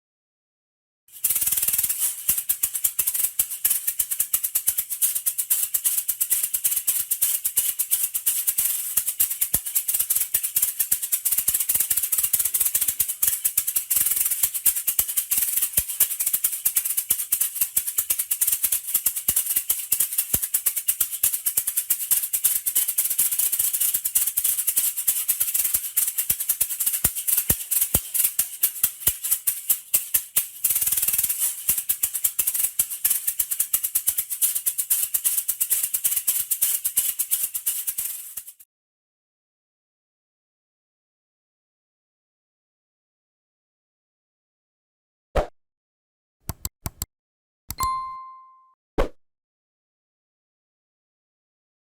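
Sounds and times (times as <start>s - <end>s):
maracas rattling: 1.1s - 38.6s.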